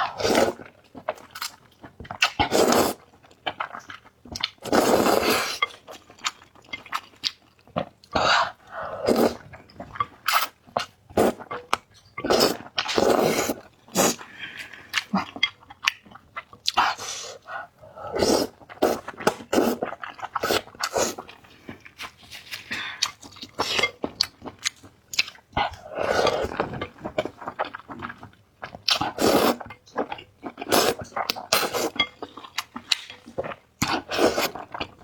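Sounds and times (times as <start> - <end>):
wet slurping: 28.9 - 29.6.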